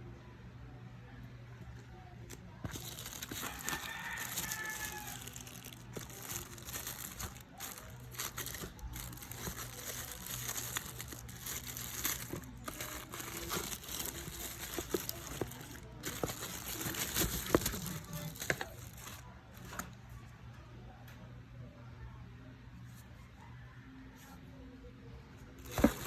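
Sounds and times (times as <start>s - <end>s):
plastic packaging crinkling: 2.3s - 19.9s, 25.6s - 26.0s.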